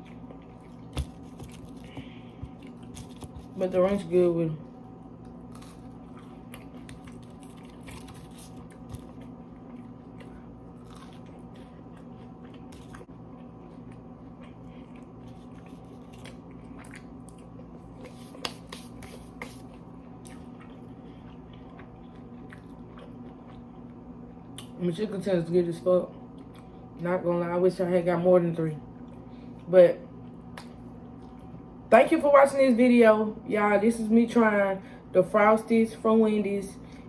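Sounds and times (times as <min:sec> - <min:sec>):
crunchy chewing: 0:00.0 - 0:03.6, 0:05.2 - 0:24.6.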